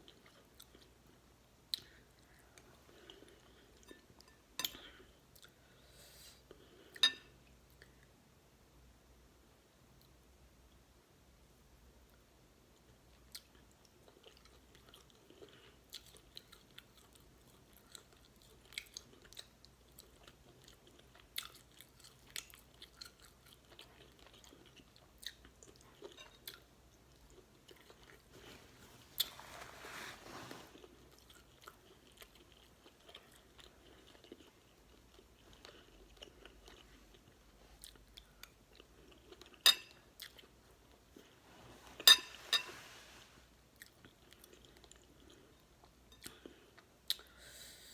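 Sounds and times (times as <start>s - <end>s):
close chewing and mouth clicks: 0.0s - 3.7s, 12.1s - 29.4s, 30.7s - 41.4s, 43.7s - 47.4s.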